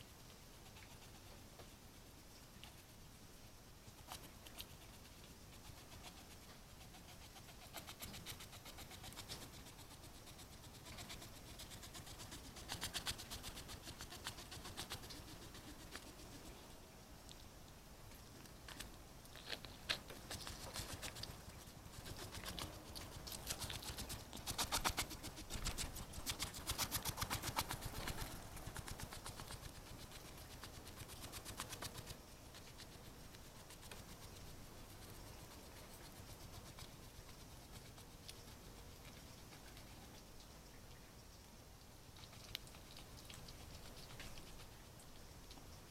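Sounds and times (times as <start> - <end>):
animal sniffing: 4.0 - 16.6, 19.4 - 40.1.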